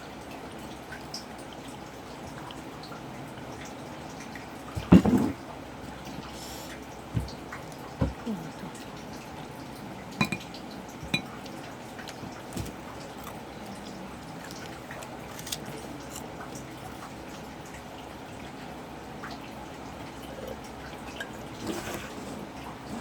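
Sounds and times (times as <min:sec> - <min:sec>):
utensils clinking against dishes: 0:10.2 - 0:13.4.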